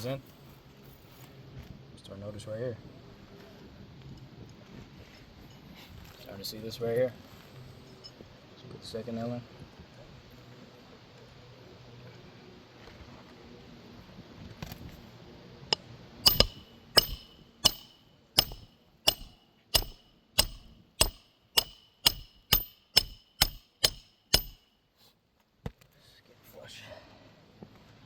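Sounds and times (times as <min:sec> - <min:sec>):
hammer striking roofing nail: 0:16.3 - 0:24.7.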